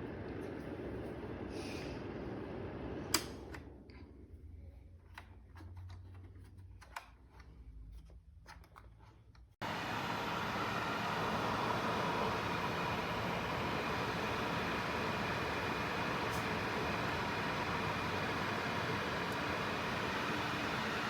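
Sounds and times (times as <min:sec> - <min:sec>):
heater whooshing hum: 0:00.0 - 0:04.6, 0:09.6 - 0:21.0.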